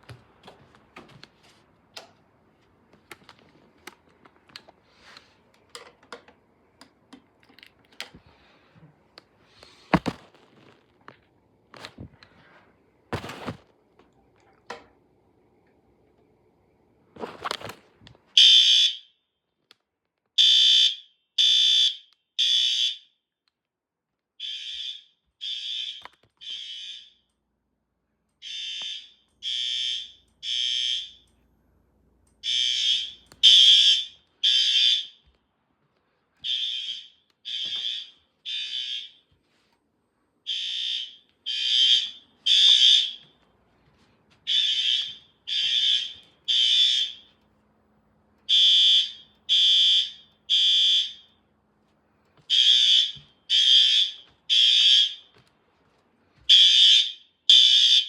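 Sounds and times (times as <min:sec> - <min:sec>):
fire alarm horn blasts: 0:18.4 - 0:19.3, 0:20.4 - 0:23.2, 0:24.4 - 0:27.3, 0:28.4 - 0:31.3, 0:32.4 - 0:35.3, 0:36.4 - 0:39.3, 0:40.4 - 0:43.5, 0:44.4 - 0:47.4, 0:48.4 - 0:51.5, 0:52.5 - 0:55.4, 0:56.5 - 0:58.0.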